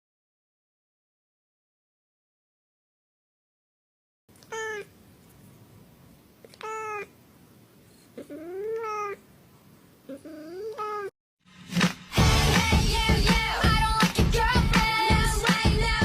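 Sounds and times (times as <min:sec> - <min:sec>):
cat meowing: 0:04.4 - 0:05.0, 0:06.5 - 0:07.1, 0:08.2 - 0:09.2, 0:10.1 - 0:11.1.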